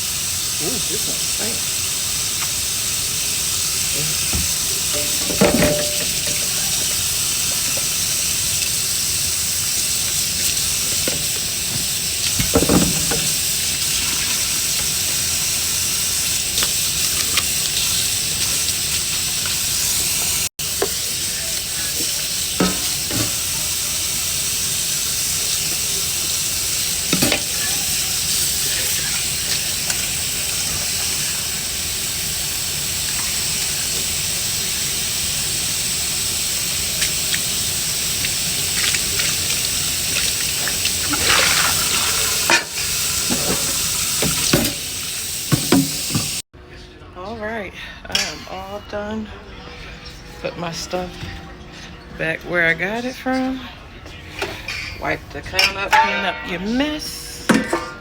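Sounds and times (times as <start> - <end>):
tap water running into sink: 0.0 - 46.4
dishes knocking and clinking: 4.1 - 7.0, 10.9 - 13.4, 22.6 - 23.4, 40.2 - 46.4, 54.4 - 56.8, 57.5 - 58.0.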